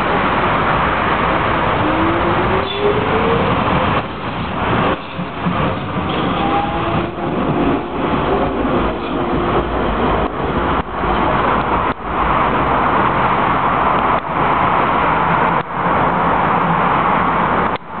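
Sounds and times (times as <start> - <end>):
train running: 0.0 - 18.0.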